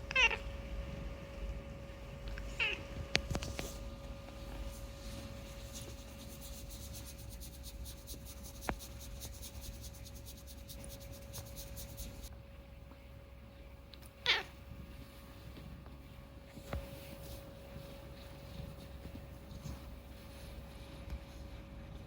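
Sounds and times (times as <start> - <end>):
cat meowing: 0.1 - 0.4, 2.5 - 2.9, 14.2 - 14.6.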